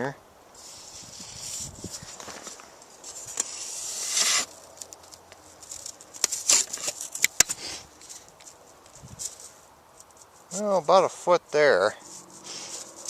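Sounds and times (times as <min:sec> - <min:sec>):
tape measure handling: 0:00.6 - 0:10.4, 0:12.0 - 0:13.0
clicks and crackles: 0:02.1 - 0:10.3
hiss: 0:03.4 - 0:04.5
snow crunching: 0:11.9 - 0:13.0.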